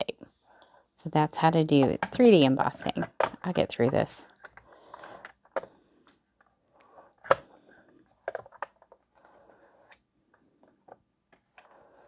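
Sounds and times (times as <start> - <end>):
plastic plates knocking: 1.7 - 4.6.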